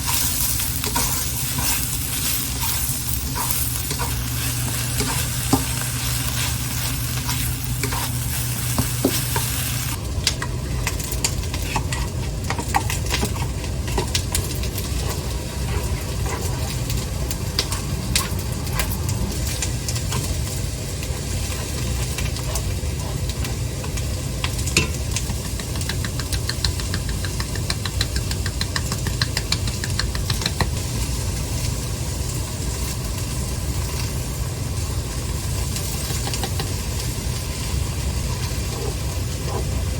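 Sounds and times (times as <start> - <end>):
spatula scraping a pan: 0.0 - 9.7
low hum: 0.0 - 24.6
food sizzling in a frying pan: 0.0 - 39.9.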